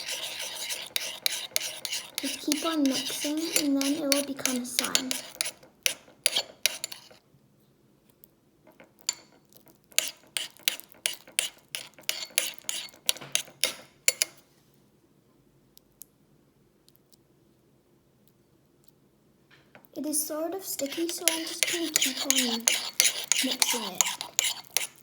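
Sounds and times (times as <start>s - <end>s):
spoon scraping against bowl: 0.0s - 7.2s, 8.7s - 14.4s, 20.6s - 25.0s.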